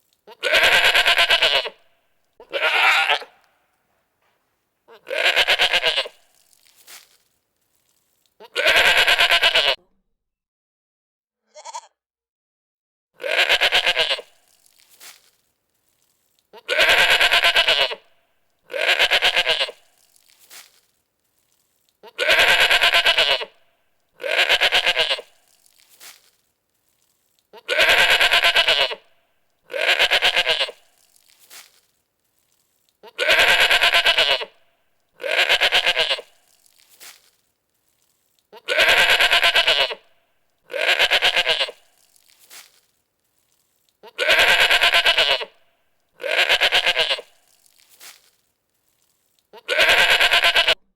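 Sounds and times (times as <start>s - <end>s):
goat bleating: 0.3s - 1.8s, 2.4s - 3.4s, 4.9s - 6.3s, 8.4s - 9.8s, 11.5s - 11.9s, 13.2s - 14.4s, 16.5s - 18.1s, 18.7s - 19.9s, 22.0s - 23.6s, 24.2s - 25.4s, 27.5s - 29.1s, 29.7s - 30.9s, 33.0s - 34.6s, 35.2s - 36.4s, 38.5s - 40.1s, 40.7s - 41.9s, 44.0s - 45.6s, 46.2s - 47.4s, 49.5s - 50.9s.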